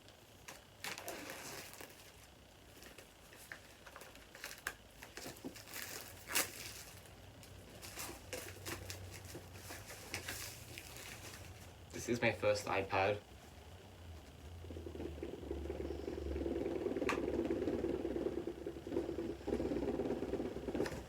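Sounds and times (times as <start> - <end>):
packaging crinkling and rustling: 0.4 - 12.6.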